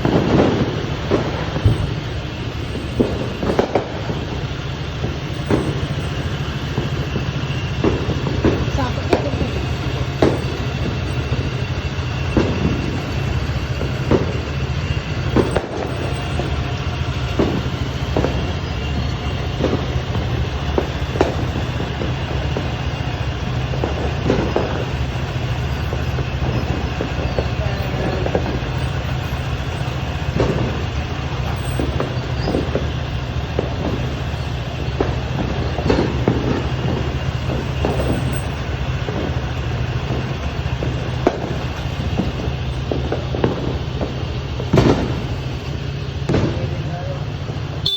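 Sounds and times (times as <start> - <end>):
firecrackers banging: 0.0 - 47.9
steady low rumble: 0.0 - 47.9.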